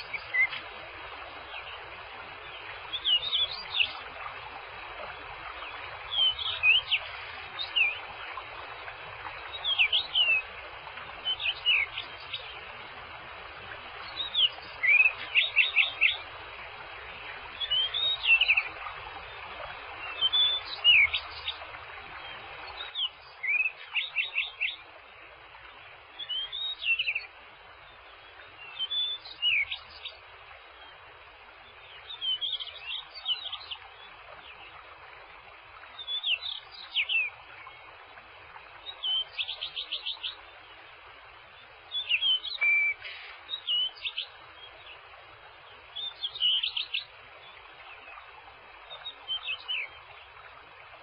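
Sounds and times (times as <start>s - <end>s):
songbird singing: 0.0s - 24.9s, 25.6s - 35.0s, 35.8s - 50.7s
steady background hiss: 0.0s - 51.0s.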